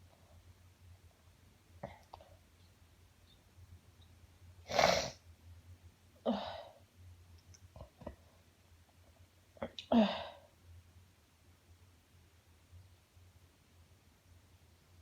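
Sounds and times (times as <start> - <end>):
person sneezing: 4.7 - 5.2.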